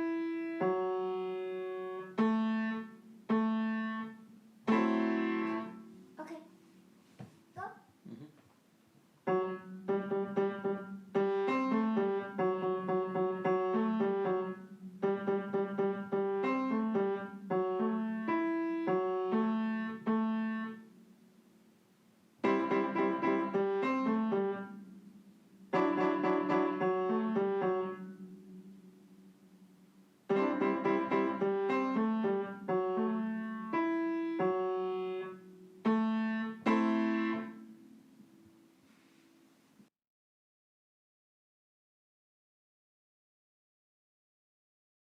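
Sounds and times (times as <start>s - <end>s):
piano playing simple tune: 0.0s - 6.6s, 9.2s - 21.2s, 22.4s - 38.9s.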